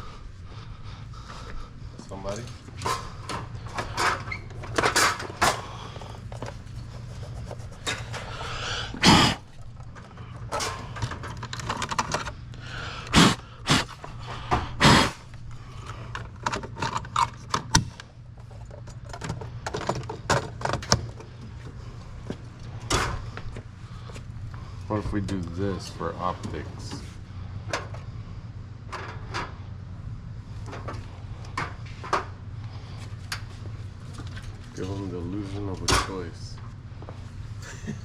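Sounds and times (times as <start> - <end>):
steady low hum: 0.0 - 38.0
clattering of products and parts: 2.3 - 12.4, 15.6 - 21.8.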